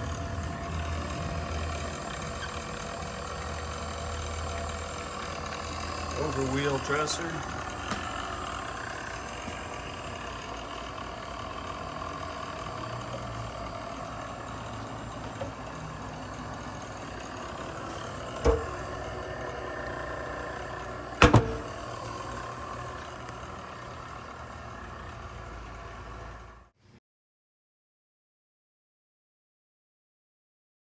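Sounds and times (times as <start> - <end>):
surface grinder humming: 0.0 - 26.7
sharp knocks: 18.4 - 18.8, 21.2 - 21.8.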